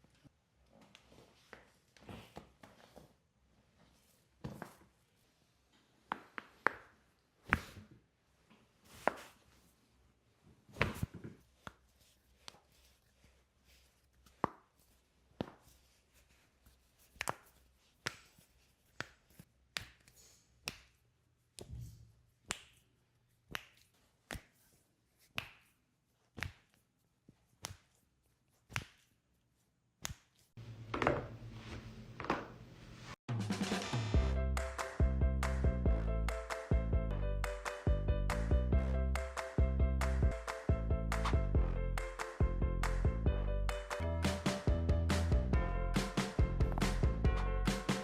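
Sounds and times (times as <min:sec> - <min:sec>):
music with drums: 0:33.3 - 0:38.5, 0:42.2 - 0:48.0.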